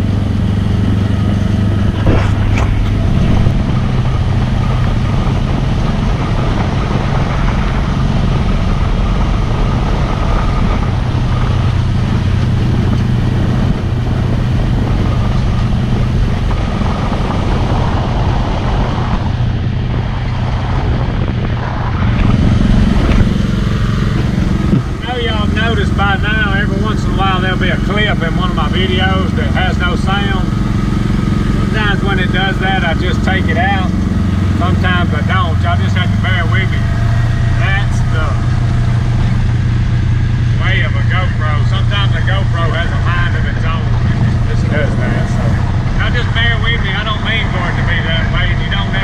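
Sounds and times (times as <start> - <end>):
utility vehicle engine running: 0.0 - 49.0.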